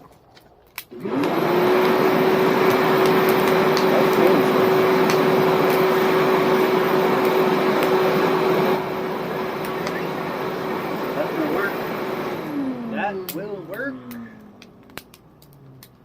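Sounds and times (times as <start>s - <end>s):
vacuum cleaner motor whining: 0.9s - 16.0s.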